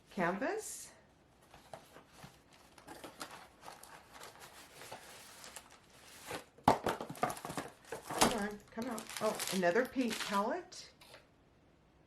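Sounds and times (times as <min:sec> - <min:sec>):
packaging rustling: 0:01.4 - 0:10.5.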